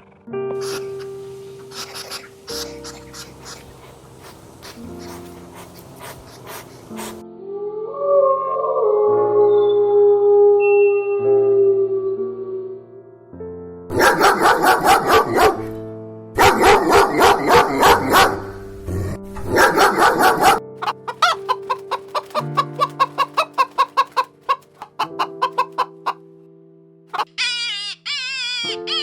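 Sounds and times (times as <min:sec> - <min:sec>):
chickens clucking: 0:00.0 - 0:07.2, 0:19.4 - 0:26.2, 0:27.1 - 0:27.4
background music: 0:00.0 - 0:29.0.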